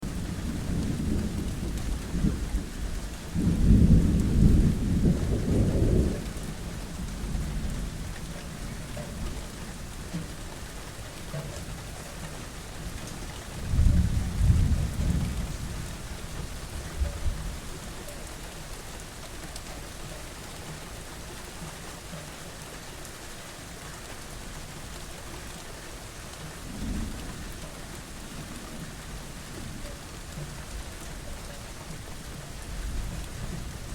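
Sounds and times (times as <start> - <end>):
rolling thunder: 0.0 - 9.6, 13.6 - 17.6
steady rain: 0.0 - 33.9.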